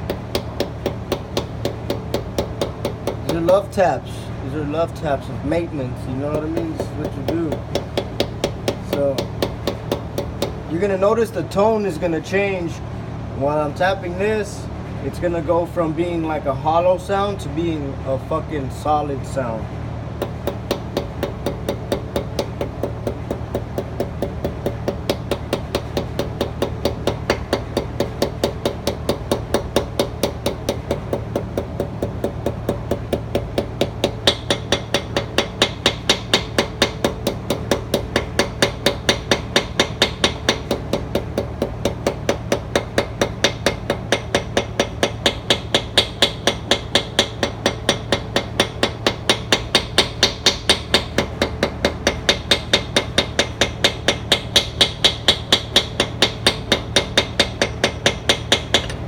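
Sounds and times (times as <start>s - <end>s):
hammer tapping on metal: 0.0s - 3.7s, 6.3s - 10.6s, 20.2s - 59.0s.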